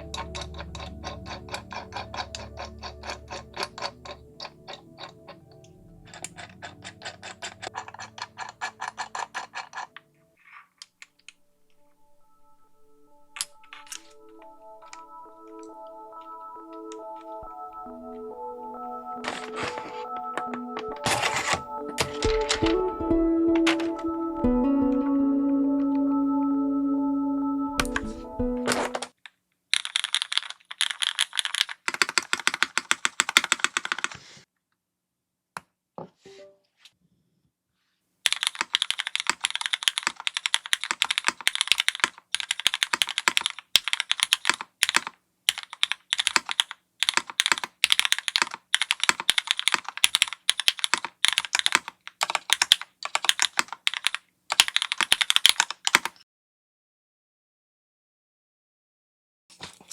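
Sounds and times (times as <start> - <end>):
mechanical keyboard typing: 0.0 - 10.0, 13.4 - 25.2, 27.8 - 29.1, 29.8 - 34.2, 38.3 - 56.2.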